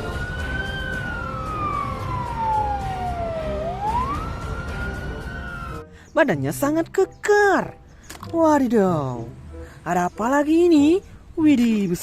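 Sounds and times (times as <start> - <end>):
wailing siren: 0.0 - 5.9.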